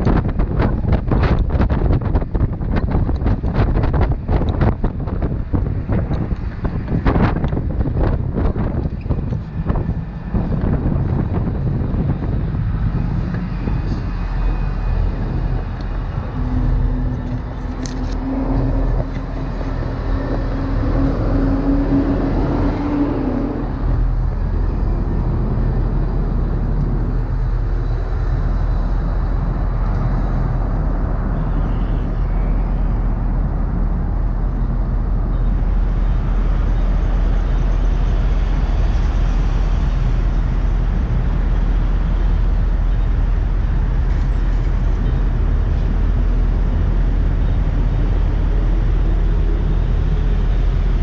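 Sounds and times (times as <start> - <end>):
vehicle rumble: 0.0 - 51.0
held low tone: 8.3 - 38.4.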